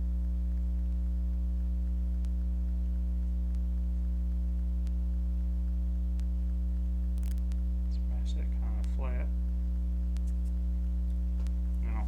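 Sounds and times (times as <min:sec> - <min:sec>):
electrical mains hum: 0:00.0 - 0:12.0
faint ticks: 0:00.2 - 0:08.0, 0:10.1 - 0:11.8.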